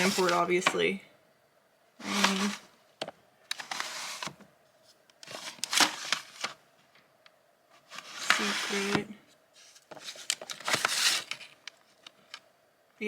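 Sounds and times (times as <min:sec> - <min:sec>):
plastic cd cases clattering: 0:00.0 - 0:00.8, 0:02.0 - 0:04.4, 0:05.2 - 0:06.6, 0:07.8 - 0:09.1, 0:09.7 - 0:12.4.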